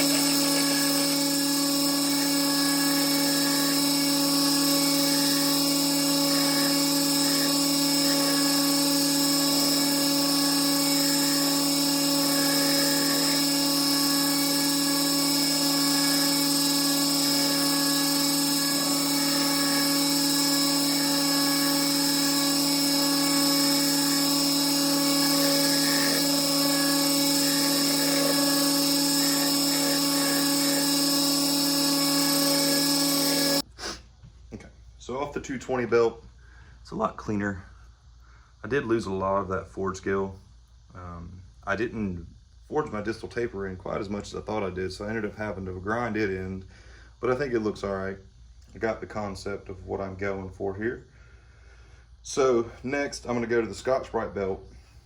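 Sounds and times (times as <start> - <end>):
belt grinder motor whine: 0.0 - 33.7
steel blade grinding on belt: 0.0 - 33.7.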